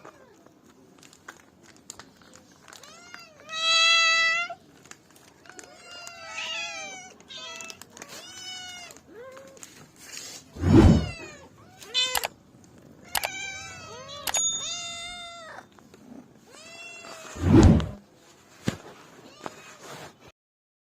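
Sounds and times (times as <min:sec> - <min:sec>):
cats meowing: 0:02.6 - 0:04.6, 0:05.2 - 0:09.9, 0:10.6 - 0:18.0.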